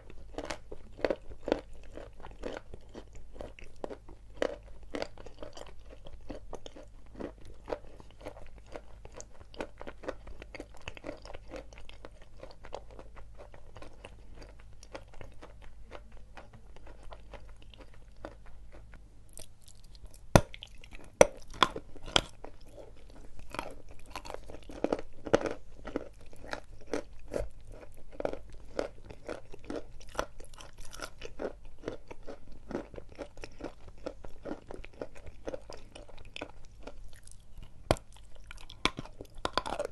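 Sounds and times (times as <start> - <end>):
gritty chewing crunches: 0.0 - 39.9.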